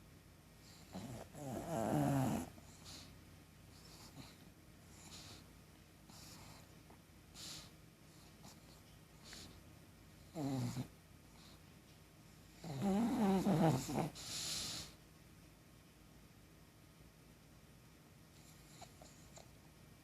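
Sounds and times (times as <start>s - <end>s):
dog snoring: 0.6s - 3.1s, 3.7s - 5.4s, 6.1s - 6.7s, 10.2s - 11.6s, 12.4s - 15.0s, 18.4s - 19.5s
dog breathing faintly: 0.6s - 15.1s, 18.3s - 19.7s.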